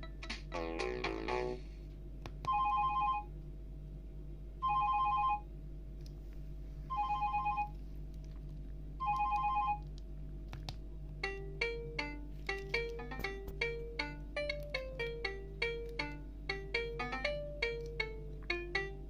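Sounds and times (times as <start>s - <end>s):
phone ringtone trills: 2.5s - 3.3s, 4.6s - 5.4s, 6.9s - 7.7s, 9.0s - 9.8s, 11.2s - 19.0s
melodic tone: 11.2s - 19.0s.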